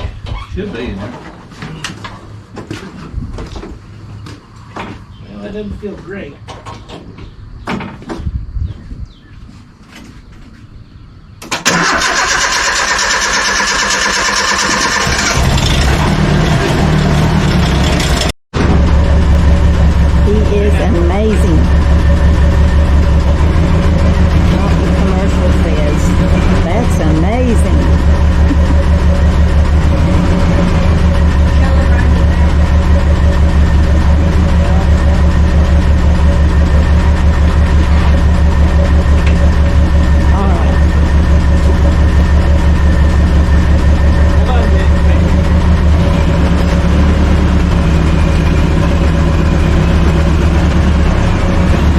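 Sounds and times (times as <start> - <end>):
truck engine starter cranking: 11.4 - 16.3
truck engine running: 11.6 - 51.9.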